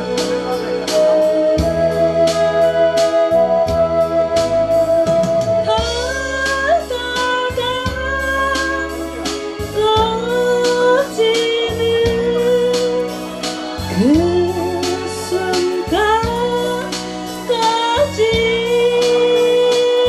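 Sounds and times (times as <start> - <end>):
sliding lead melody: 0.0 - 20.0
sustained keyboard chords: 0.0 - 20.0
steady drum beat: 4.7 - 19.2.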